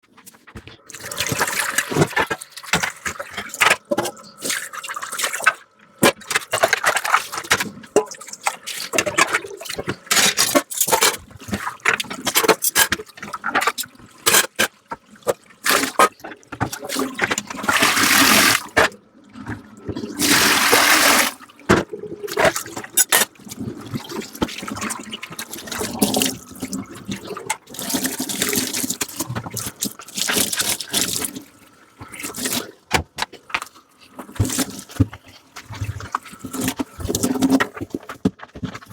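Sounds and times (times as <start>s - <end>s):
tap water running and splashing: 0.7s - 38.9s.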